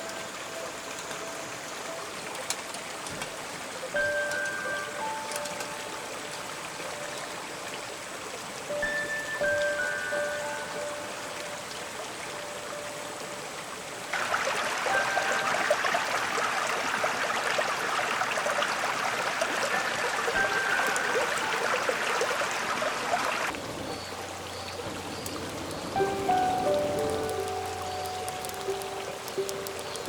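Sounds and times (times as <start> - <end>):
stream babbling over rocks: 0.0 - 30.0
chime-like music notes: 3.9 - 7.4, 8.7 - 13.6, 14.8 - 16.4, 20.4 - 22.1, 26.0 - 30.0.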